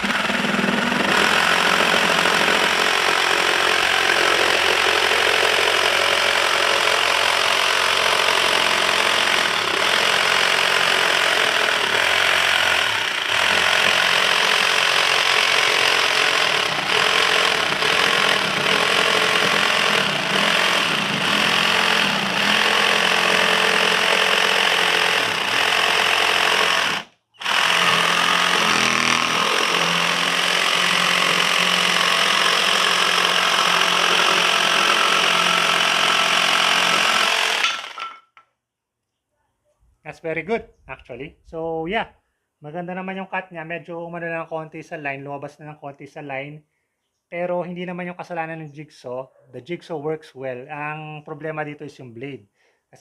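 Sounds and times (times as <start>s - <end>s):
jigsaw cutting wood: 0.0s - 38.2s.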